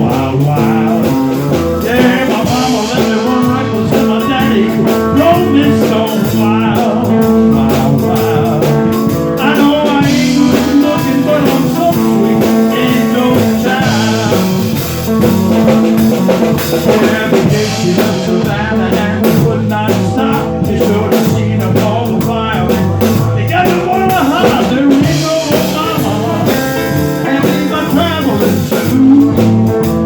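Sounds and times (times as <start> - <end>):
blues guitar with bending notes: 0.0 - 30.0.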